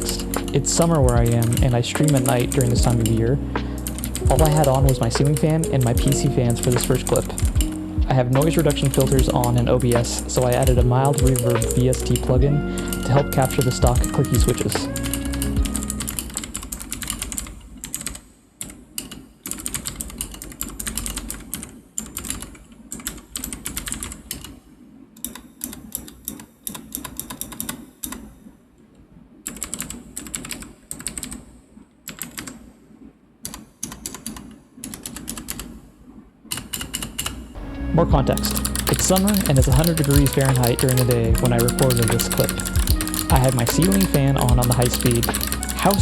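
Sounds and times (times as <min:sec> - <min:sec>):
clicky mechanical keyboard typing: 0:00.0 - 0:03.2, 0:08.4 - 0:18.2, 0:38.2 - 0:46.0.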